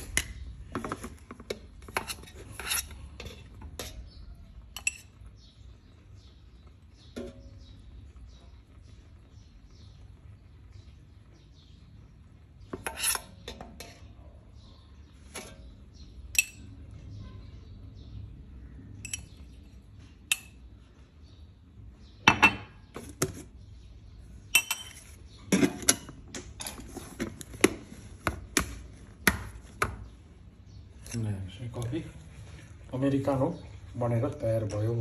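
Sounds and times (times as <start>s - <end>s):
kitchenware clinking: 0.0s - 5.3s, 15.2s - 16.9s, 19.0s - 19.5s, 22.2s - 23.4s, 24.5s - 27.6s.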